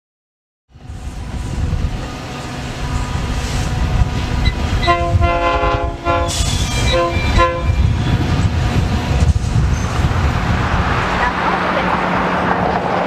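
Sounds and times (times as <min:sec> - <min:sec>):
steady low rumble: 0:00.8 - 0:13.0
horn chord and toots: 0:04.8 - 0:07.8.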